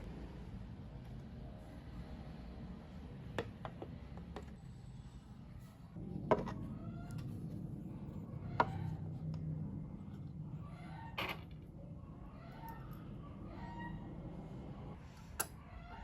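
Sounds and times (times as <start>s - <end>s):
low steady hum: 0.0s - 15.5s.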